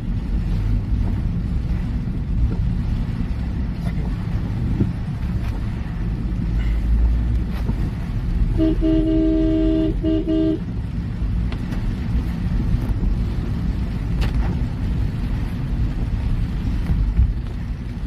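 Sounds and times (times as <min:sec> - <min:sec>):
low rumble of road traffic: 0:00.0 - 0:18.0
vehicle horn honking: 0:08.5 - 0:10.7.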